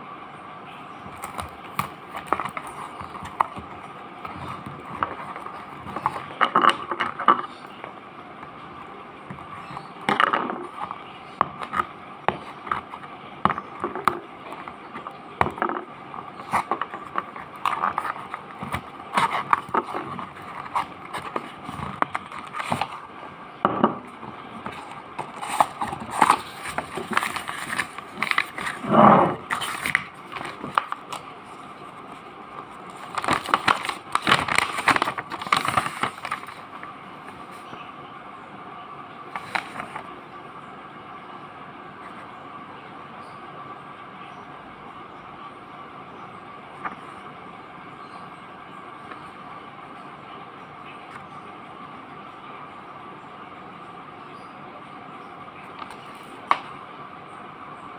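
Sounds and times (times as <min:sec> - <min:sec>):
steady background hum: 0:00.0 - 0:57.9
box packaging crinkling: 0:01.1 - 0:07.5, 0:12.5 - 0:23.0, 0:24.2 - 0:37.8, 0:39.3 - 0:40.1.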